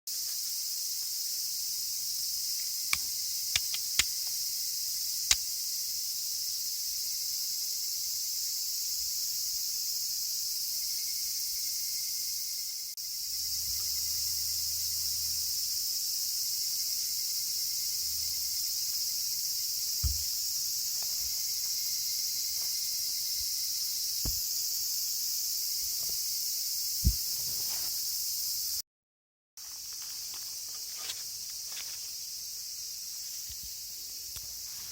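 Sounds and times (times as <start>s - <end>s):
high-pitched insect chorus: 0.1s - 28.8s, 29.6s - 34.9s
sharp clicks: 2.9s - 4.2s.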